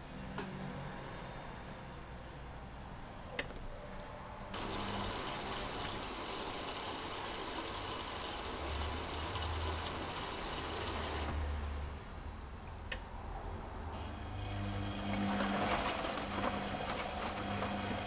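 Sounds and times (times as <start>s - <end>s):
water rushing in: 4.6s - 11.6s.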